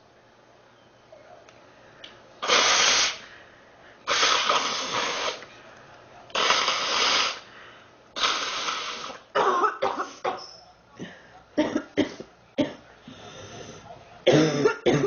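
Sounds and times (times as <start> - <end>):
girl coughing: 9.4 - 10.5, 11.6 - 12.8, 14.3 - 15.0.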